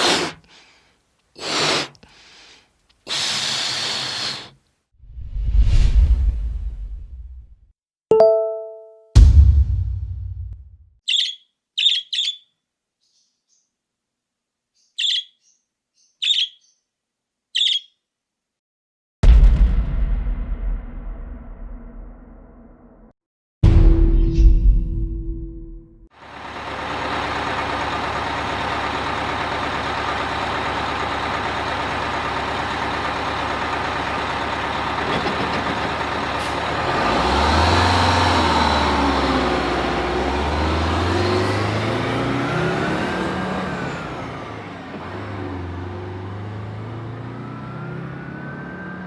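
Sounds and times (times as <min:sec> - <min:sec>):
vehicle engine rumbling: 0:26.2 - 0:49.0.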